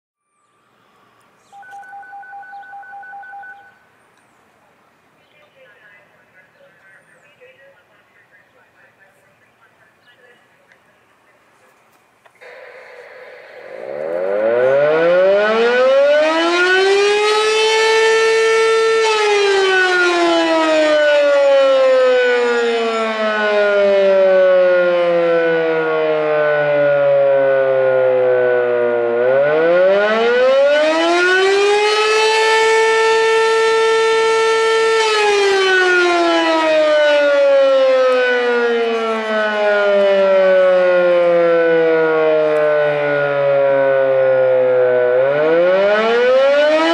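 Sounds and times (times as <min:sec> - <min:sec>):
warning siren wailing: 0:01.4 - 0:03.9, 0:12.4 - 0:46.9.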